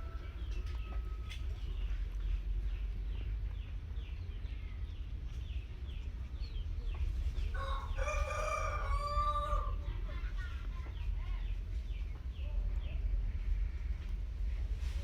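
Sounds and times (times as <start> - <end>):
rooster crowing: 7.5 - 9.8.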